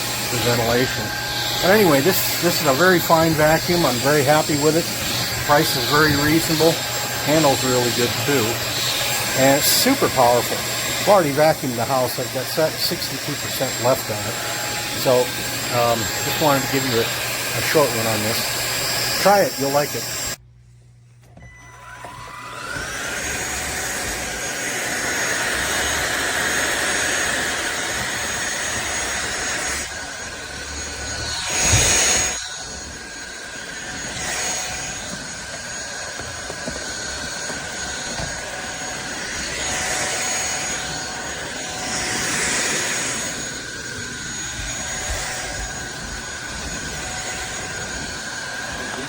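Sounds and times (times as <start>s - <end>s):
stick vacuum motor whine: 0.0s - 20.4s, 21.2s - 49.0s
suction air rushing: 23.4s - 49.0s.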